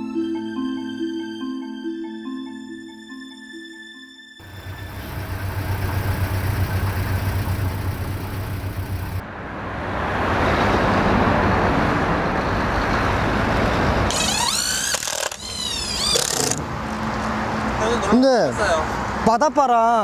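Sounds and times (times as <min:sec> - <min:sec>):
boat engine humming: 0:04.4 - 0:09.2.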